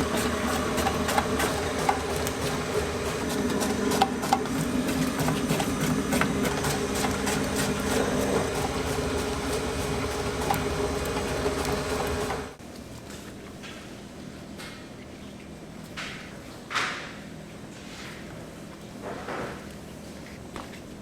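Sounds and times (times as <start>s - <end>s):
machinery humming with clicking: 0.0s - 13.9s.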